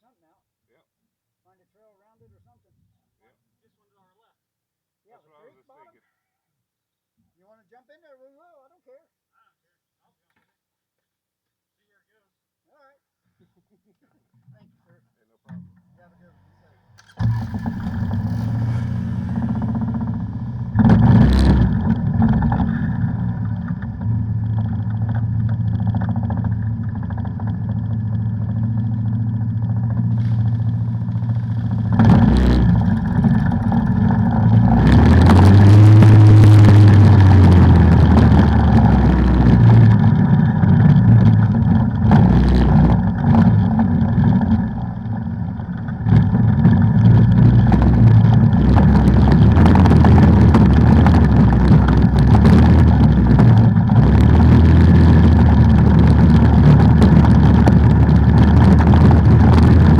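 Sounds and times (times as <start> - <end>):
quad engine revving: 17.0 - 59.9.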